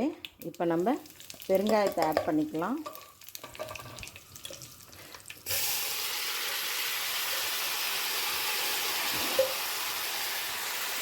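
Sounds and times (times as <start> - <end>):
faint crackling in hot oil: 0.0 - 7.7
loud sizzle in oil: 0.7 - 11.0.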